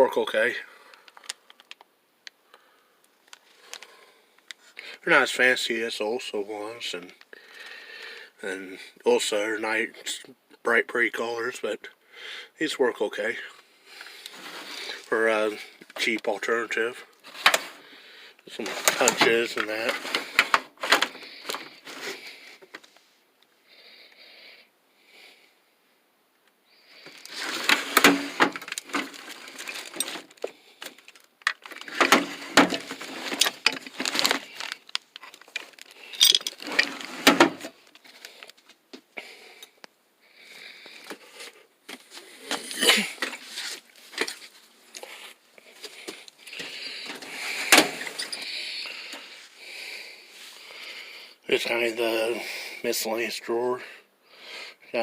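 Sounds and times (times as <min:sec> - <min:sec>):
tool box drawers sliding: 0:18.6 - 0:21.1, 0:36.2 - 0:37.8
hand tools clinking: 0:36.0 - 0:37.0.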